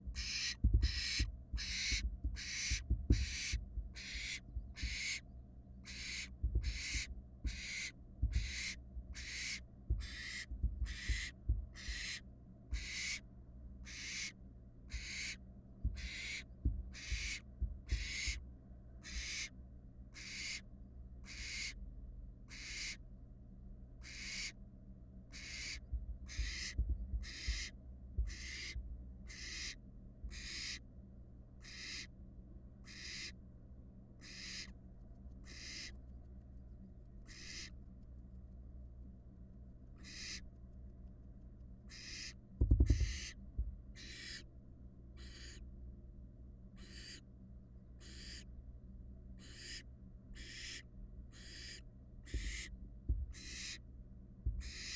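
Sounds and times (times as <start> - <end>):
low thumps: 0.0 - 5.1, 6.4 - 7.6, 8.2 - 9.2, 9.9 - 12.1, 15.8 - 18.4, 25.9 - 29.0, 42.6 - 43.8, 52.3 - 53.4, 54.4 - 54.7
owl fledglings hissing begging calls: 0.0 - 5.2, 5.8 - 18.4, 19.0 - 21.8, 22.5 - 23.0, 24.0 - 24.6, 25.3 - 30.8, 31.6 - 32.1, 32.8 - 33.4, 34.2 - 34.8, 35.4 - 36.0, 37.2 - 37.7, 40.0 - 40.4, 41.9 - 43.4, 44.0 - 44.5, 45.1 - 45.7, 46.8 - 47.3, 48.0 - 48.5, 49.4 - 53.8, 54.6 - 54.9.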